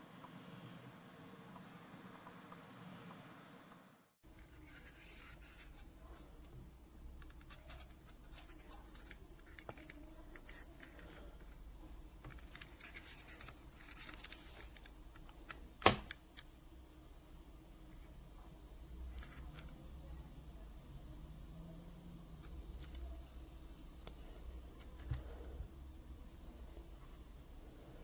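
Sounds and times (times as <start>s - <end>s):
handling noise scratches and rustles: 4.2s - 16.4s, 18.9s - 20.2s.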